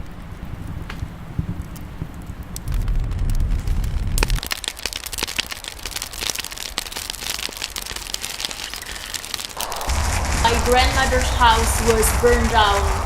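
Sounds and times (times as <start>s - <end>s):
fire crackling: 0.0s - 13.0s
low rumble: 9.6s - 13.0s.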